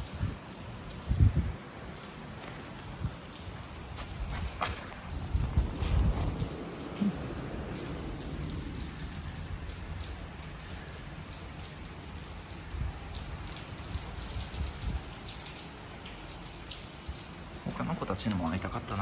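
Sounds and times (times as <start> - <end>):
steady rain falling: 0.0 - 19.0
low rumble: 5.0 - 10.4.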